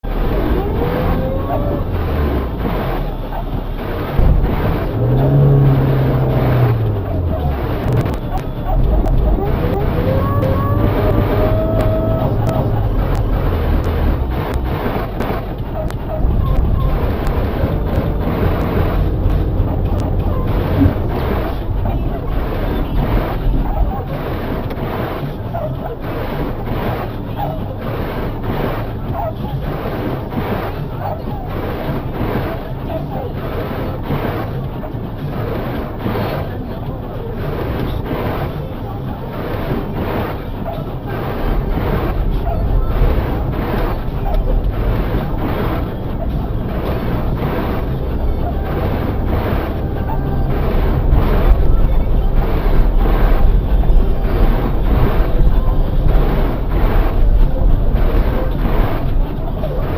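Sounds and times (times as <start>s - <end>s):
blizzard wind on microphone: 0.0s - 59.9s.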